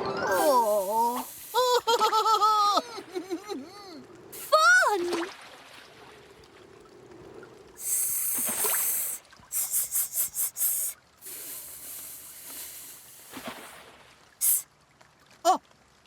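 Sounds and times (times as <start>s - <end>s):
cartoon hissing bursts: 0.2s - 2.1s, 4.4s - 4.9s, 7.8s - 13.7s, 14.4s - 14.6s.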